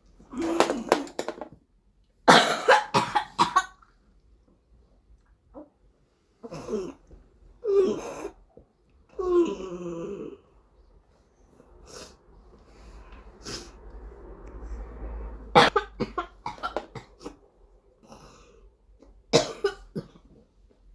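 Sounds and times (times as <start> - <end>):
child coughing sharply: 2.3 - 3.8, 15.6 - 17.4, 19.3 - 20.2
noisy breathing: 11.4 - 15.5.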